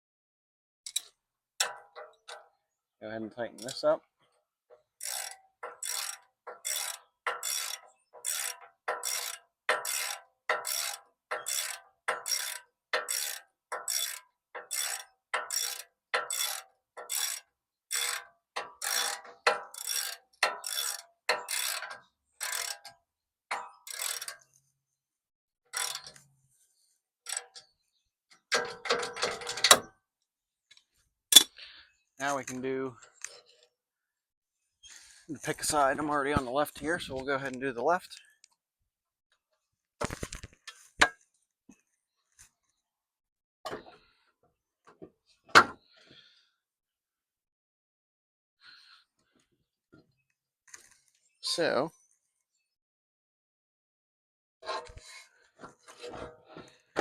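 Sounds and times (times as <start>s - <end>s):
ratchet wrench clicking: 5.0s - 22.9s, 23.8s - 24.4s, 25.8s - 26.2s.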